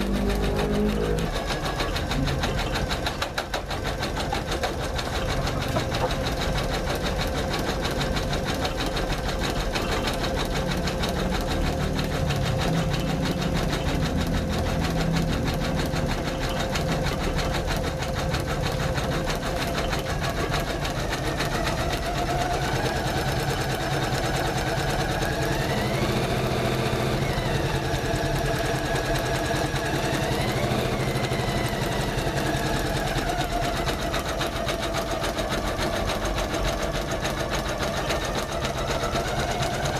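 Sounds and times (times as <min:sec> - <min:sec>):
whining tones rising and falling: 0:00.0 - 0:01.4
embroidery machine stitching: 0:00.0 - 0:39.9.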